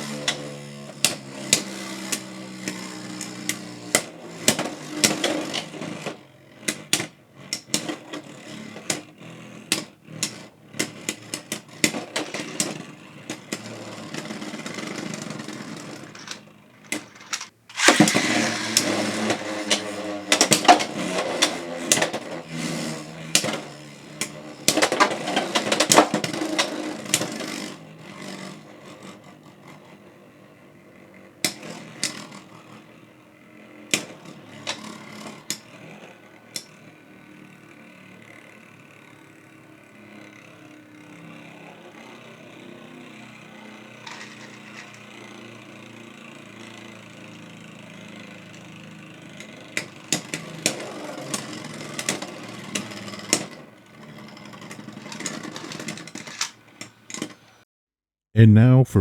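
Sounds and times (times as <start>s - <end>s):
spinning tops whirring: 12.4s - 20.3s
spinning tops clacking together: 16.0s - 18.2s.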